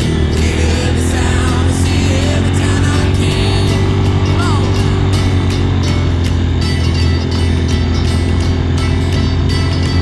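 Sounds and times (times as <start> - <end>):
pop-rock song with singing: 0.0 - 5.5.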